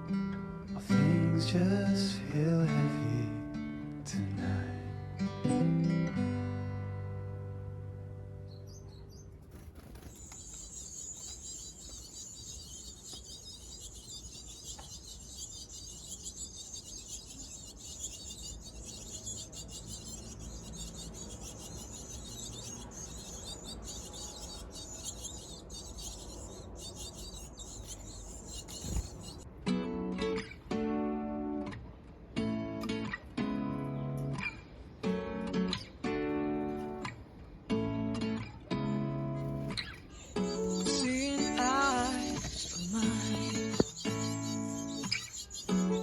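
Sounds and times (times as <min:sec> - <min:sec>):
birds chirping rapidly: 0:08.2 - 0:29.4, 0:39.4 - 0:46.0.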